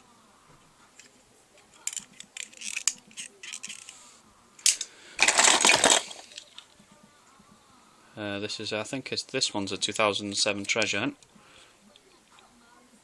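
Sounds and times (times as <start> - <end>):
toy cars clattering together: 1.0 - 4.0, 4.6 - 6.7
toy cars clicking and knocking: 1.0 - 4.0, 4.6 - 6.7.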